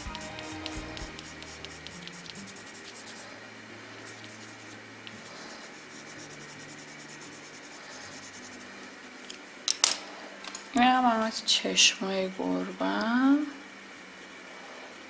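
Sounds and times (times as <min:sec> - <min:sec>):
pencil scratching on paper: 0:00.0 - 0:03.3, 0:04.0 - 0:08.7.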